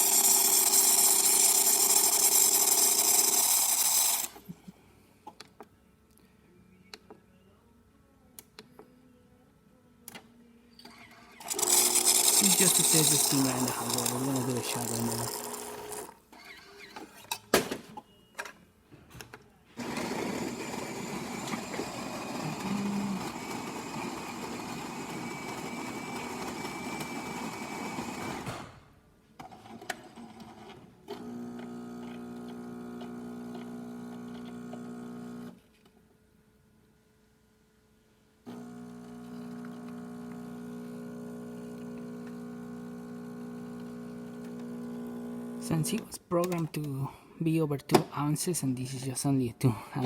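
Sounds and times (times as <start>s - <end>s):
coffee bean grinder running: 0.0s - 4.4s, 11.4s - 16.2s, 19.8s - 28.4s, 31.2s - 35.6s, 38.5s - 46.0s
pump buzzing: 11.4s - 16.1s, 19.8s - 28.3s, 31.2s - 35.6s, 38.5s - 45.8s.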